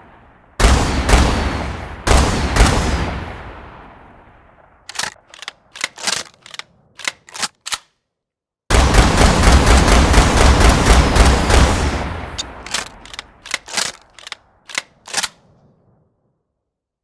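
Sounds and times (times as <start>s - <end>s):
rapid string of gunshots: 0.6s - 3.2s, 8.7s - 15.6s
short metallic clicks: 4.9s - 8.0s, 12.4s - 15.4s.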